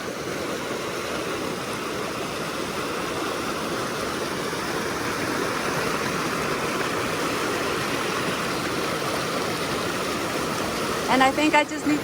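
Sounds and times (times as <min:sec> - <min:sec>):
creek water rushing: 0:00.0 - 0:12.0.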